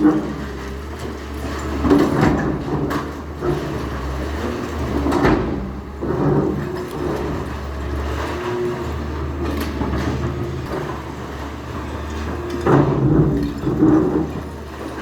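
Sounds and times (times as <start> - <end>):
demolition machinery droning: 0.0 - 15.0
debris knocking and clanking: 9.7 - 15.0.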